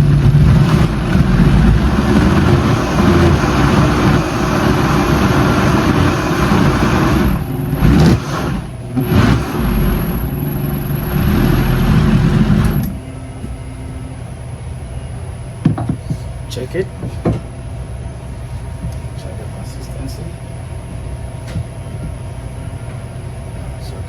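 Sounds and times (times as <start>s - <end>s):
blender motor running: 0.0s - 13.0s.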